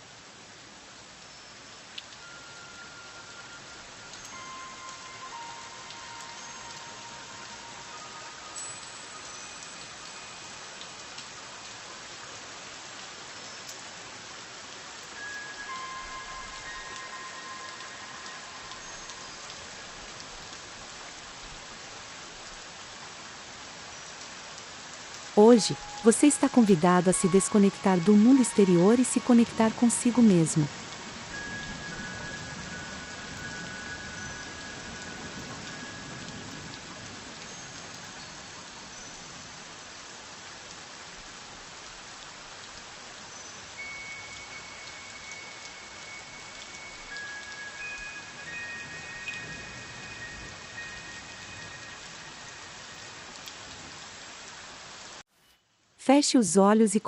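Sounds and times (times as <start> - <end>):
steady rain falling: 0.0 - 55.3
faint held high tones: 2.2 - 10.8, 15.2 - 20.1, 25.4 - 36.3, 43.3 - 53.4.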